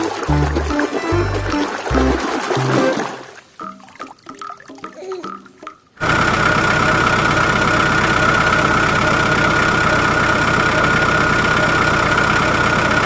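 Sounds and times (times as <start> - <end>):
mechanical running noise with whine: 6.0 - 13.0.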